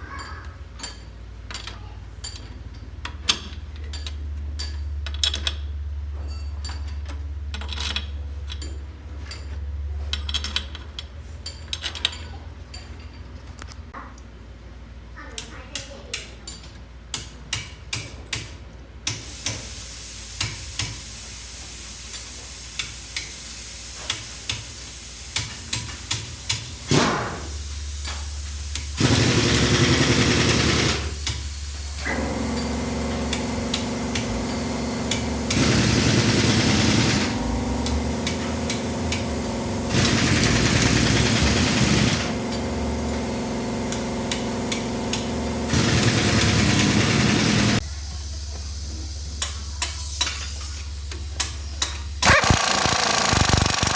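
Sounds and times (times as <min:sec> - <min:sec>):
diesel engine running: 0:28.5 - 0:47.8, 0:52.2 - 0:53.9
sharp metallic clicks: 0:52.2 - 0:53.9.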